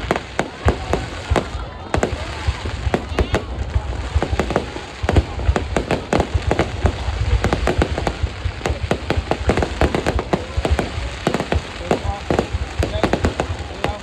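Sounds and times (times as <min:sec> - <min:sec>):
fireworks bangs and crackling pops: 0:00.0 - 0:14.0.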